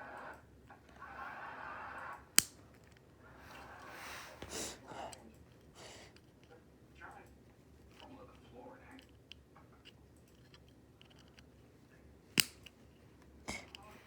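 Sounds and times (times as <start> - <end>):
plastic snap: 2.2 - 3.7, 12.3 - 13.9
plastic toy pieces handled: 2.4 - 14.0.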